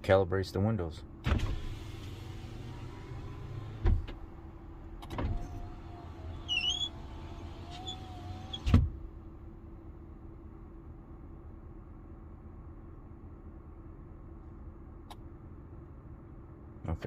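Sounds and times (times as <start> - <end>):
power window motor humming: 1.3 - 9.0
window glass thudding at stop: 3.7 - 4.2, 7.7 - 9.0.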